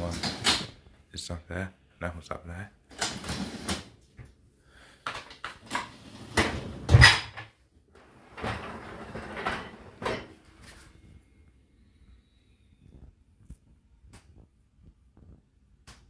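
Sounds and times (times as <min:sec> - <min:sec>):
dishes and racks clattering: 0:05.1 - 0:07.5, 0:08.3 - 0:10.4.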